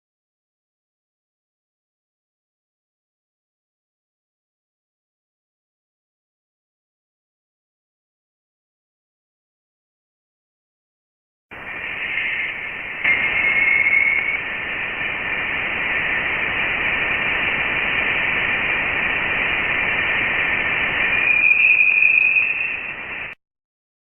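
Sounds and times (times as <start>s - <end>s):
high whining tone: 11.5s - 23.4s
steady hiss: 11.5s - 23.4s.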